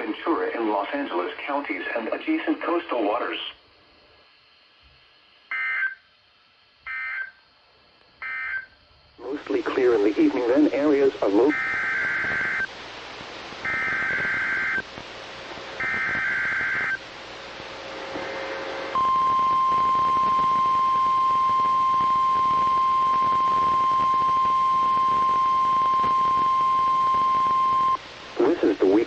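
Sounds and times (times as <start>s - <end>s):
steady warning alarm tone: 5.5s - 6.0s, 6.9s - 7.4s, 8.2s - 8.7s, 10.1s - 12.7s, 13.6s - 14.9s, 15.8s - 17.0s, 18.9s - 28.0s
warbling digital data tones: 9.7s - 12.7s.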